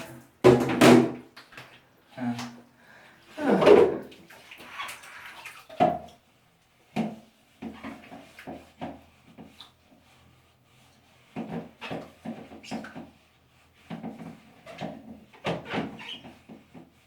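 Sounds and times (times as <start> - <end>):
water splashing in a tub: 3.4 - 6.3.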